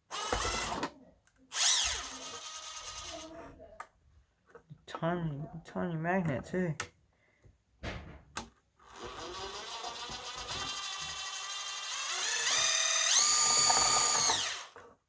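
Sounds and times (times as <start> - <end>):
electric drill motor whirring: 0.1 - 0.9, 1.5 - 3.3, 8.8 - 14.8.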